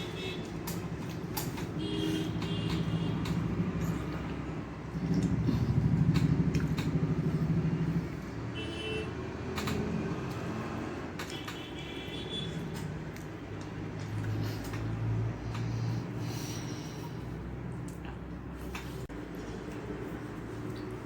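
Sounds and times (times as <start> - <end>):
engine rumbling: 0.0 - 21.0
small clicks: 9.5 - 10.5.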